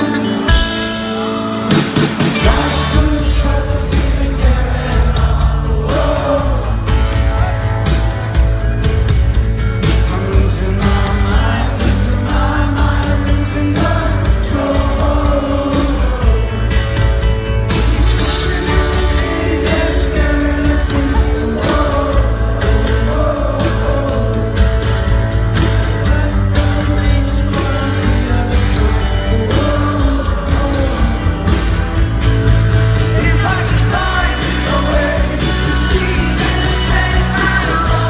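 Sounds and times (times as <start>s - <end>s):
heavy bass: 0.0s - 38.0s
steady drums: 0.0s - 38.0s
male singer: 2.2s - 7.8s, 9.8s - 31.8s, 33.0s - 38.0s.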